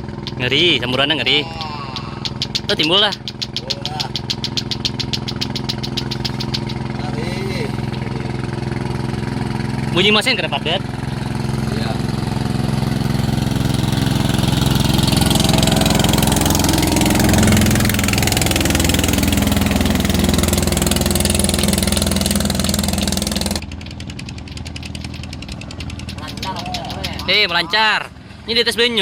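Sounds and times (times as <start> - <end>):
boat engine running: 0.0 - 29.0.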